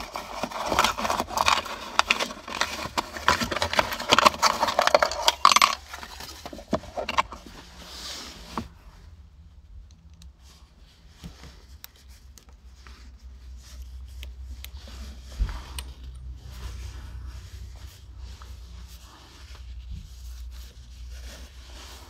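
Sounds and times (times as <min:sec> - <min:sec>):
small metal parts clicking: 0:00.6 - 0:07.4.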